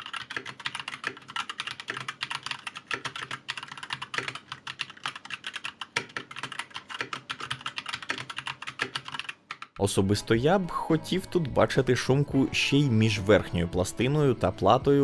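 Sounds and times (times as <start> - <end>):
fast typing on mechanical keyboard: 0.0 - 9.8.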